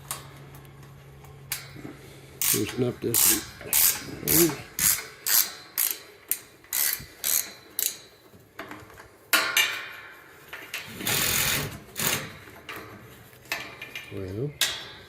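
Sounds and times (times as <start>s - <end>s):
rasping noises: 1.8s - 8.0s
ratchet wrench clicking: 2.4s - 8.1s, 10.9s - 12.3s.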